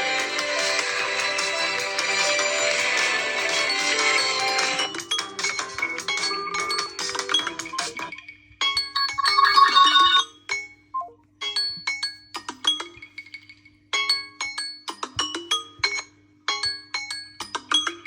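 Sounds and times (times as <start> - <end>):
marimba-like phone ringtone: 8.8 - 10.4.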